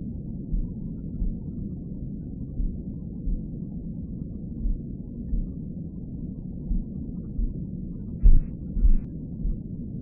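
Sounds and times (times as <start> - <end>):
muffled low white noise: 0.0 - 10.0
deep heartbeat thumps: 0.5 - 1.4, 2.6 - 3.4, 4.6 - 5.5, 6.7 - 7.6, 8.2 - 9.6.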